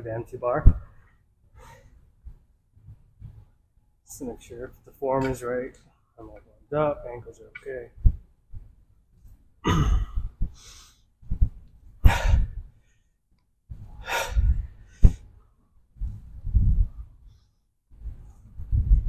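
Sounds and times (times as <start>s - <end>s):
low thuds of movement: 11.2s - 12.7s, 16.0s - 17.1s, 18.0s - 19.0s
man breathing out forcefully: 12.0s - 12.6s, 13.9s - 15.2s.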